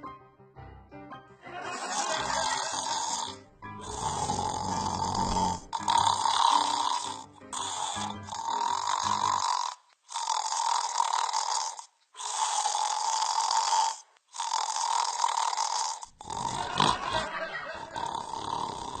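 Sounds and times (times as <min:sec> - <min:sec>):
person snoring loudly: 0:01.7 - 0:19.0
low snort: 0:01.9 - 0:17.3, 0:17.9 - 0:19.0.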